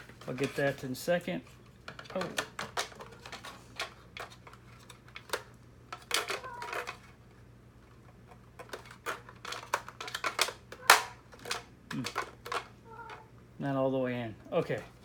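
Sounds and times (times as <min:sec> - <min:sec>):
plastic parts clicking together: 0:01.9 - 0:07.1, 0:07.8 - 0:13.2.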